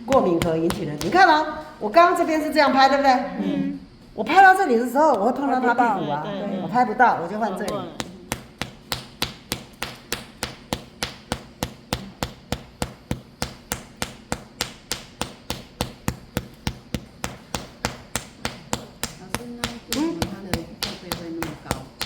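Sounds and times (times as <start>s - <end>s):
rapid open-hand slaps on back: 0.0s - 1.3s, 7.6s - 22.0s.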